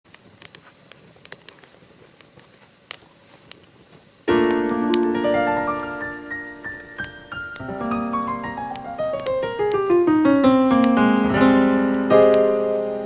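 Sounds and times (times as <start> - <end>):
campfire crackling and popping: 0.1 - 13.0
piano music: 4.3 - 13.0.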